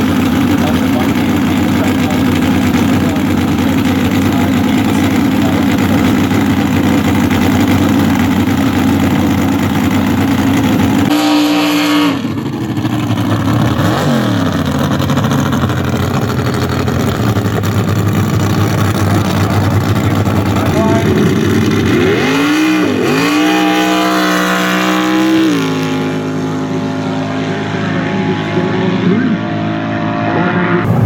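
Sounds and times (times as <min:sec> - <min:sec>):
racing engine running hard: 0:00.0 - 0:31.0.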